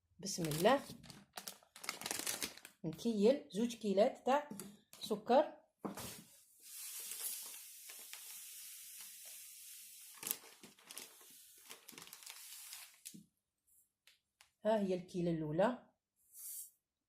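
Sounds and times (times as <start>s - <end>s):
sugar pouring hiss: 6.6s - 10.2s.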